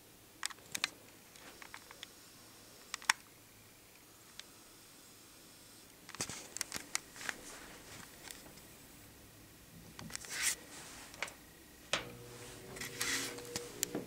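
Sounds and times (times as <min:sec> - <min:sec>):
clicks and rustling of handling: 0:06.1 - 0:08.6
electric fan motor humming: 0:06.4 - 0:14.0
fan switch click: 0:11.2 - 0:14.0.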